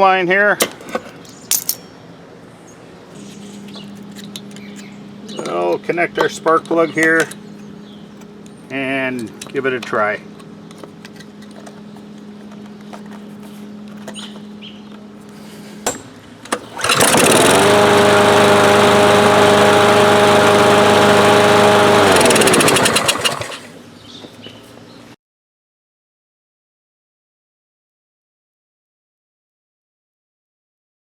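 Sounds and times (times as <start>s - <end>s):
lawn mower engine running: 16.2s - 23.8s.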